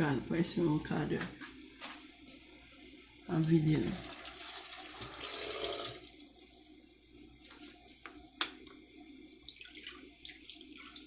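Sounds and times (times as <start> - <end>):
water being poured: 9.4 - 11.0.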